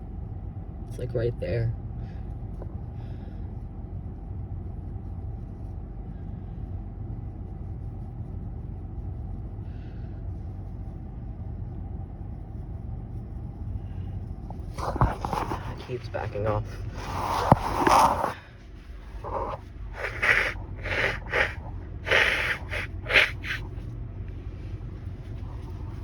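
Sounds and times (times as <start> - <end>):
steady low rumble: 0.0 - 26.0
person breathing through nose: 16.8 - 23.9.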